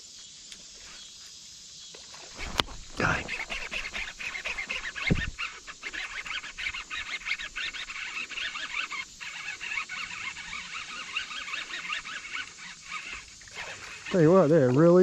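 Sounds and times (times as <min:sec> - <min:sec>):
high-pitched animal calls: 0:02.4 - 0:14.4.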